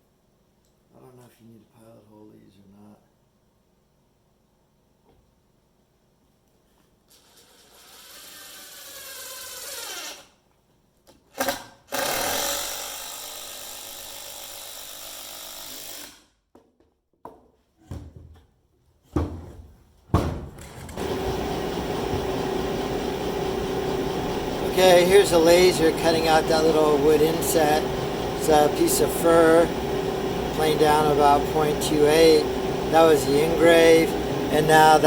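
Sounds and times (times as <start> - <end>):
power drill driving screws: 7.1 - 10.3, 11.4 - 16.3
steady machine hum: 21.0 - 35.0.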